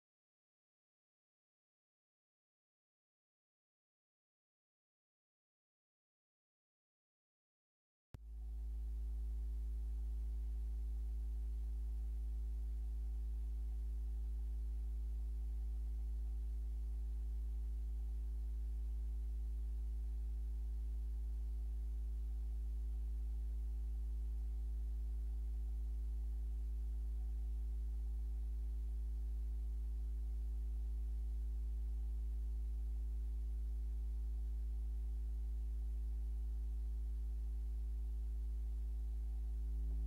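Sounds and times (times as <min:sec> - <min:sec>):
faint constant tones: 0:08.2 - 0:40.0
low electrical hum: 0:08.2 - 0:40.0.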